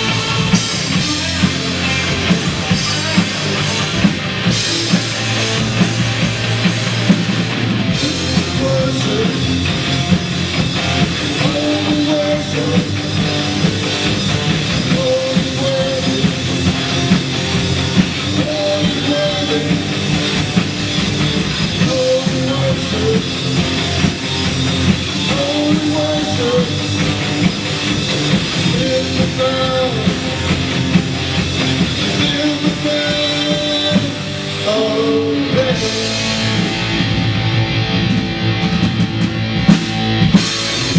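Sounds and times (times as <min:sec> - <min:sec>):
rock band playing: 0:00.0 - 0:40.9
person singing: 0:07.9 - 0:09.7, 0:11.1 - 0:13.9, 0:14.8 - 0:16.5, 0:18.3 - 0:20.0, 0:21.8 - 0:23.4, 0:25.2 - 0:27.0, 0:28.6 - 0:30.5, 0:32.1 - 0:36.6.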